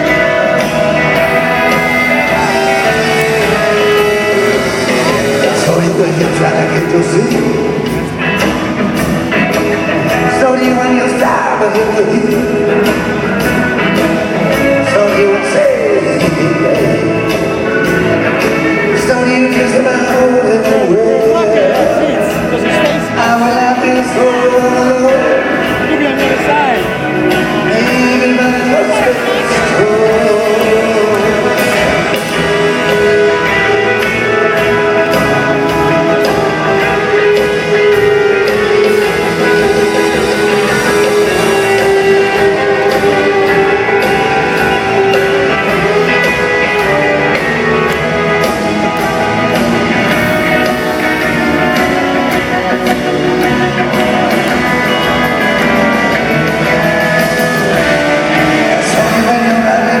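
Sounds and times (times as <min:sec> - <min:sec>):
guitar rock music: 0:00.0 - 1:00.0.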